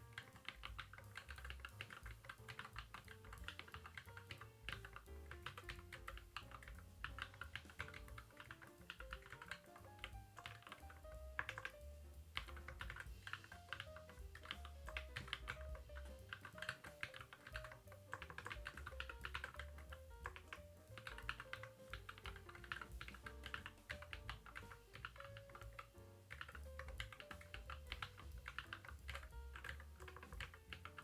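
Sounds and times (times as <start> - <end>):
mechanical keyboard typing: 0.0 - 31.0
soft background music: 0.0 - 31.0.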